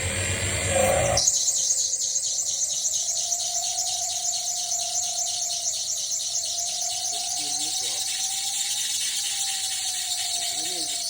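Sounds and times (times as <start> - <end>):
high fast-pulsing hiss: 0.0 - 1.4.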